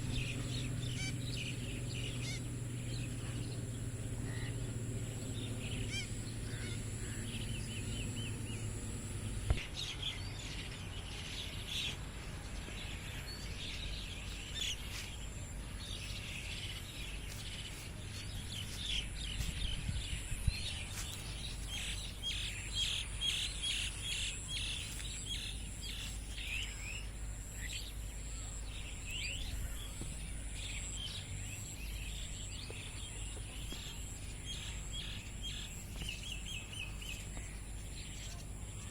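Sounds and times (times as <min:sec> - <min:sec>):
low hum: 0:00.0 - 0:09.7
birds chirping: 0:00.0 - 0:38.9.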